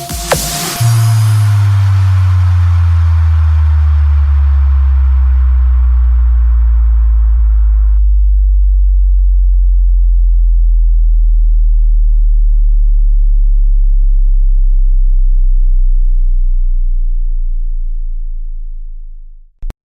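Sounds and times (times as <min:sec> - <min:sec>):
deep sub-bass tone over loudspeakers: 0:00.0 - 0:19.8.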